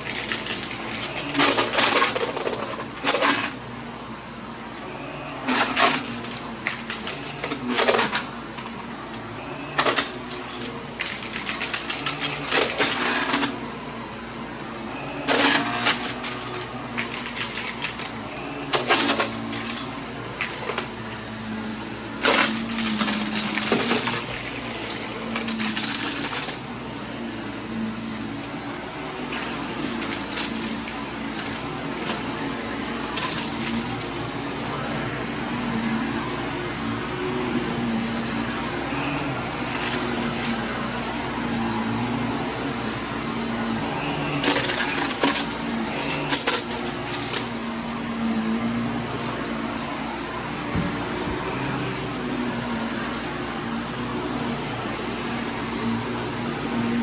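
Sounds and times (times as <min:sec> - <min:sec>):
vacuum cleaner running: 0:00.0 - 0:57.0
debris rattling through vacuum: 0:22.2 - 0:27.1, 0:28.2 - 0:34.4, 0:44.3 - 0:47.5.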